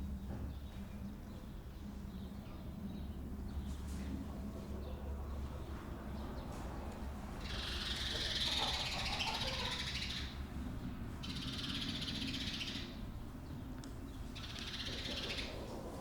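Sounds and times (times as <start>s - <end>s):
steady low hum: 9.9s - 16.0s.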